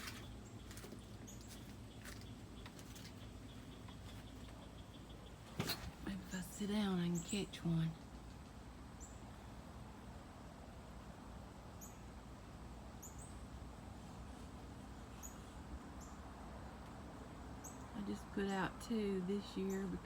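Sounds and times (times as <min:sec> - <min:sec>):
low background hum: 0:00.0 - 0:20.0.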